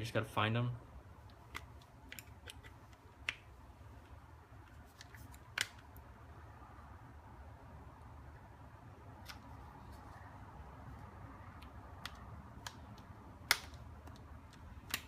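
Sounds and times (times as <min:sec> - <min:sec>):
plastic clips snapping: 0:04.7 - 0:05.9, 0:11.6 - 0:15.0.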